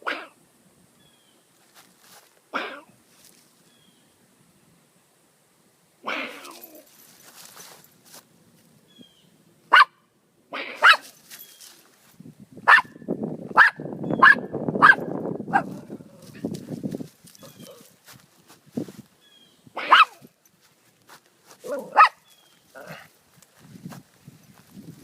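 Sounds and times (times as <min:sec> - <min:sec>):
dog barking: 0:09.7 - 0:10.0, 0:10.6 - 0:11.1, 0:12.7 - 0:15.9, 0:19.8 - 0:20.2, 0:21.6 - 0:22.2.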